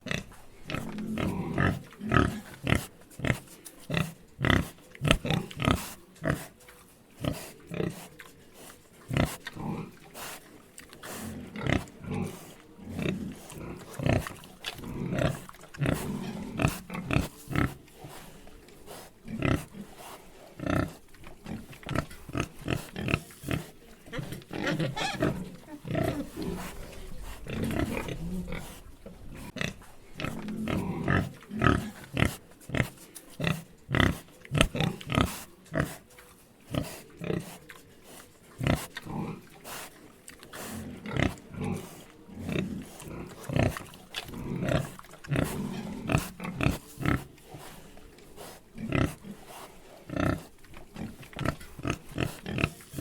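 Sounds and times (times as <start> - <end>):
pigs grunting and oinking: 0.0 - 53.0
pig squealing: 24.6 - 26.4.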